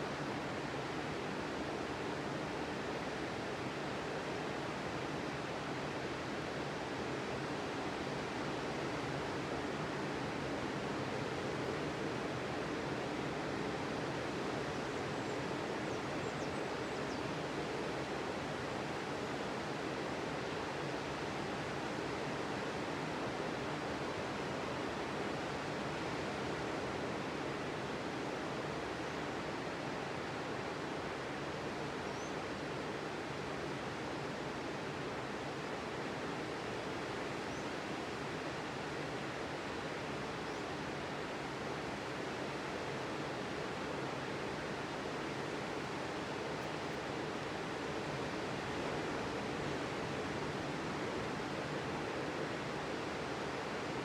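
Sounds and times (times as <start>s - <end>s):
ocean surf on a beach: 32.6s - 54.0s.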